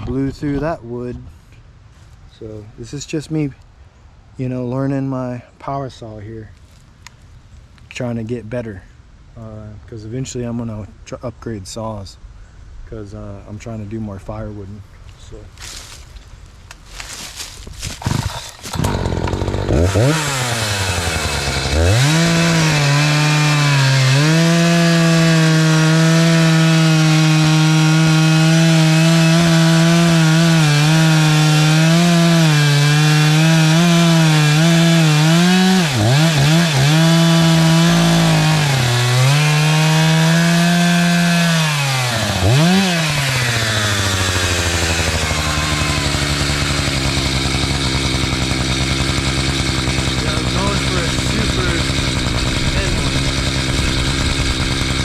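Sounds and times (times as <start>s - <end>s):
chainsaw cutting log: 17.0s - 55.0s.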